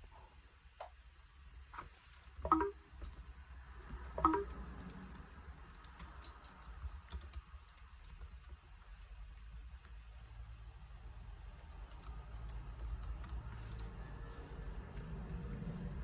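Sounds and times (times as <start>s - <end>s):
laptop keys clicking: 2.2s - 10.5s, 11.6s - 16.0s.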